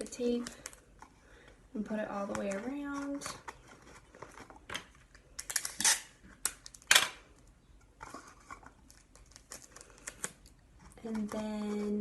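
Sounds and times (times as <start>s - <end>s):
adhesive tape ripping off roll: 5.5s - 7.0s.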